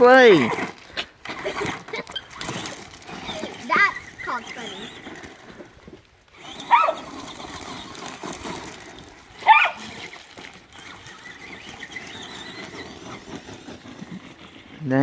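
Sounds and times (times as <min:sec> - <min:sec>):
toy truck motor and tires rushing: 0:00.0 - 0:15.0
short high-pitched cries: 0:06.4 - 0:07.2, 0:09.4 - 0:10.0.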